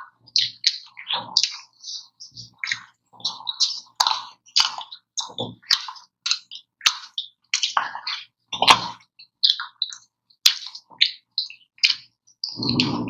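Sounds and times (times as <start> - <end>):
wet mouth smacks and slurps: 11.9 - 13.0.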